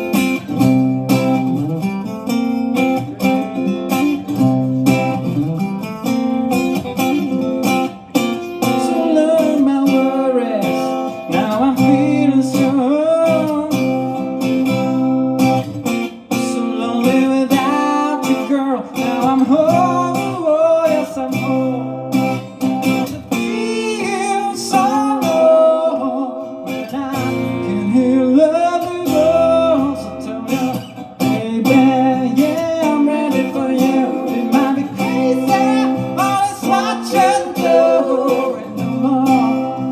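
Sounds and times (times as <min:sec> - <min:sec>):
acoustic guitar strumming chords: 0:00.0 - 0:39.9
person singing: 0:08.6 - 0:15.6, 0:16.4 - 0:22.4, 0:23.2 - 0:39.9.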